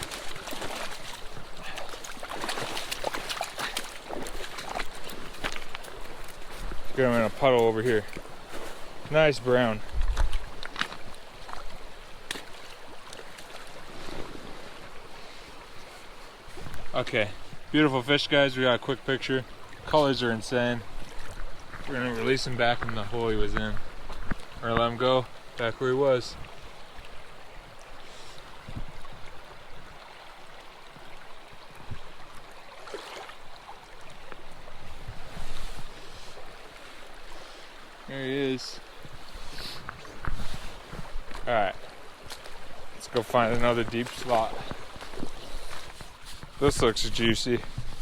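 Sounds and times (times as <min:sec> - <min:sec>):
water splash: 0:00.0 - 0:06.0, 0:32.8 - 0:33.5
creek running: 0:00.0 - 0:48.0.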